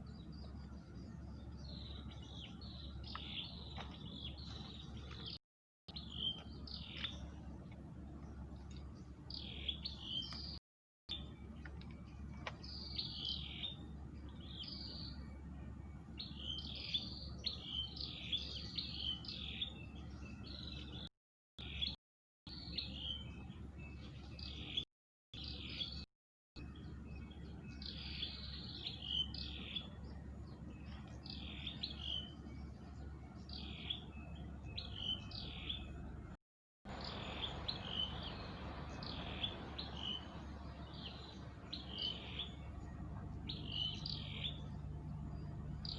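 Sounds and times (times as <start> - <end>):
birds chirping: 0.0 - 24.8, 26.6 - 45.9
low background rumble: 34.4 - 45.9.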